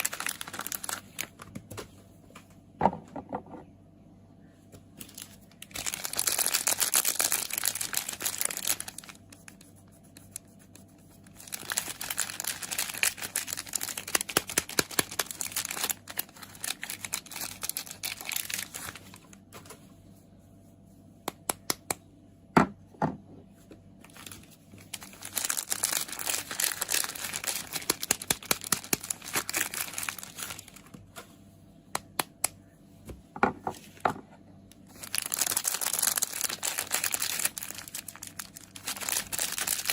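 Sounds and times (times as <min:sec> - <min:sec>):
wrappers crinkling and tearing: 0:00.0 - 0:01.6, 0:05.0 - 0:19.5, 0:24.0 - 0:31.0, 0:34.8 - 0:39.9.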